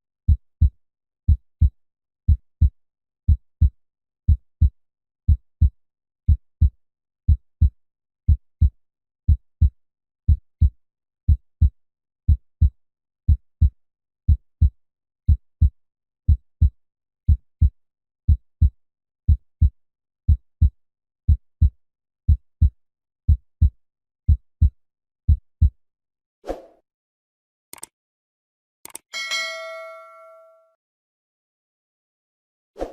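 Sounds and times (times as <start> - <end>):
heartbeat thumps: 9.3 - 9.7, 21.3 - 21.7, 23.3 - 23.7, 24.3 - 24.7, 25.3 - 25.8.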